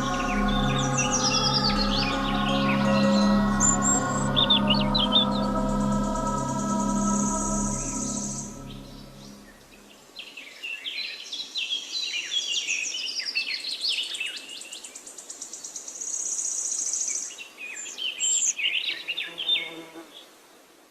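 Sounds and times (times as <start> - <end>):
birds chirping and warbling: 0.0 - 15.7.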